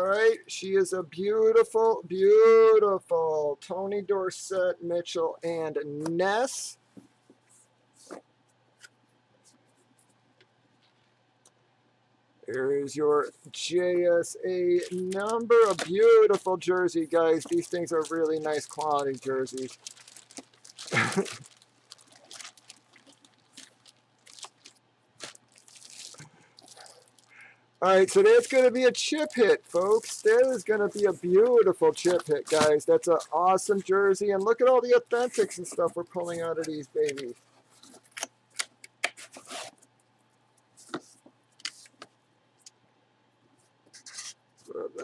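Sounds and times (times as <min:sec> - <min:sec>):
faint steady hum: 0:00.0 - 0:45.0
fabric and packaging rustling: 0:14.8 - 0:38.3, 0:39.1 - 0:39.9.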